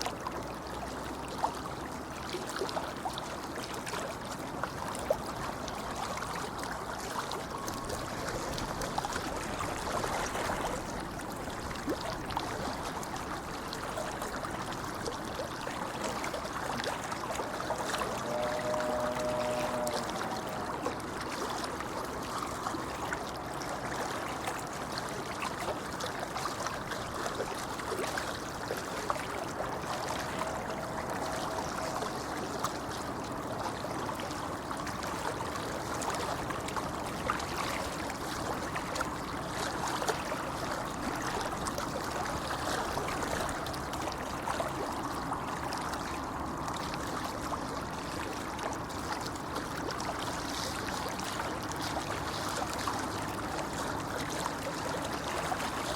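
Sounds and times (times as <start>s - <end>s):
river babbling over stones: 0.0s - 55.9s.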